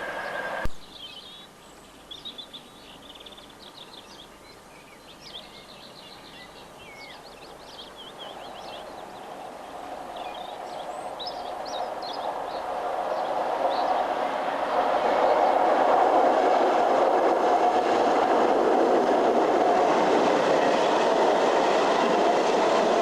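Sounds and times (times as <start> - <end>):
train rumbling: 0.0 - 0.8, 7.8 - 23.0
birds chirping and singing: 10.2 - 14.0.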